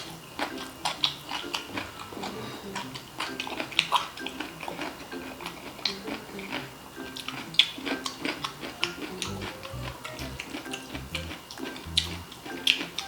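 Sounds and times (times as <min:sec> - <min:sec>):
crunching and chewing crispy food: 0:00.0 - 0:13.0
quiet background music: 0:00.0 - 0:13.0.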